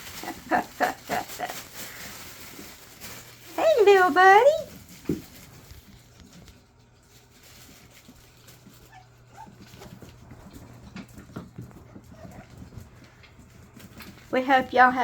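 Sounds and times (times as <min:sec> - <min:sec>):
puppies pattering and clicking: 0:00.0 - 0:15.0
puppies squeaking: 0:08.8 - 0:10.4.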